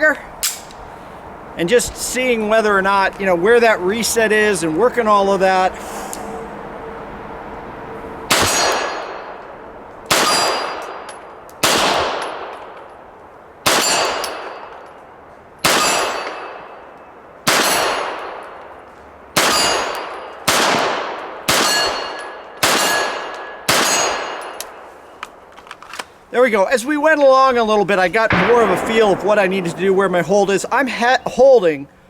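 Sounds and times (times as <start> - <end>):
pistol shots: 8.3 - 9.3, 10.1 - 12.8, 13.6 - 14.8, 15.6 - 16.8, 17.4 - 18.6, 19.4 - 24.8, 28.3 - 31.1
steel target ringing: 8.3 - 9.4, 13.7 - 15.0, 15.7 - 17.0, 19.4 - 20.4, 21.6 - 24.9, 28.3 - 31.3.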